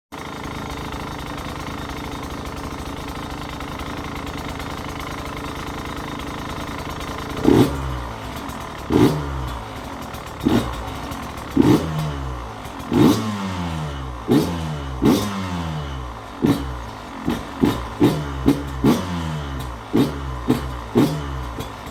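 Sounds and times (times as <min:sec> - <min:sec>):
dirt bike engine idling: 0:00.1 - 0:21.9
engine throttle blips: 0:05.6 - 0:21.9.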